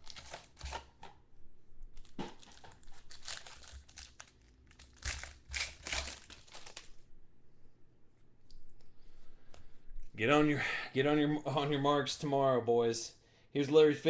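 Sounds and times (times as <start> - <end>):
plastic wrapper crinkling and tearing: 0.0 - 1.1, 2.0 - 7.0.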